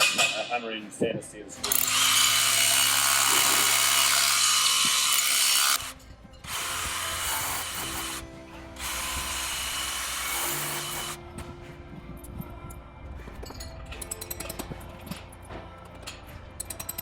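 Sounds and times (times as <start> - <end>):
power drill drilling: 1.6 - 8.2, 8.8 - 11.2.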